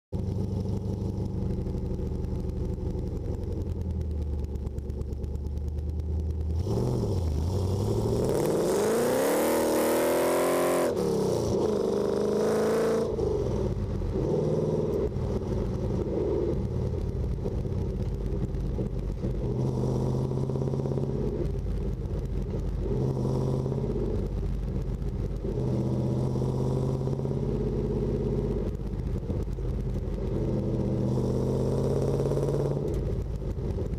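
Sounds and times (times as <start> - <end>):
car engine revving: 0.2 - 33.9.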